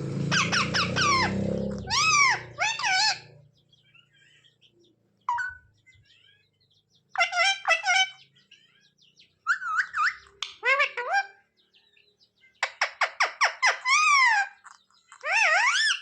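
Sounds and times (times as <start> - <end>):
parrot squawking calls: 0.2 - 4.6, 5.3 - 11.5, 12.6 - 16.0
parrot sharp chirps: 0.3 - 3.4, 7.1 - 11.4, 12.6 - 16.0.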